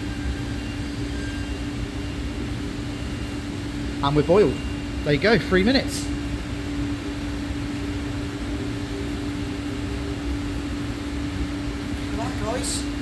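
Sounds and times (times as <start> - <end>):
steady machine hum: 0.0 - 13.0.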